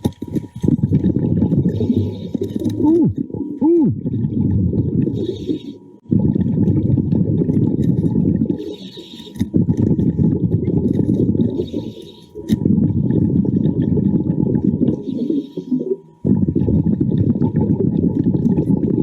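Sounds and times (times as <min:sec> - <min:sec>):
exhaled air bubbling: 0:00.0 - 0:19.0
regulator hiss on inhale: 0:08.6 - 0:09.4, 0:11.5 - 0:12.4.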